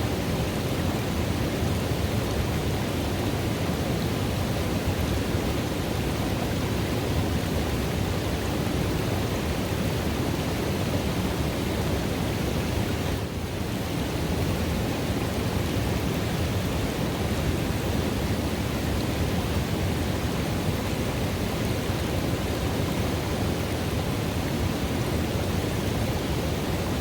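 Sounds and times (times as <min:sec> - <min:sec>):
river water rushing into pool: 0:00.0 - 0:27.0.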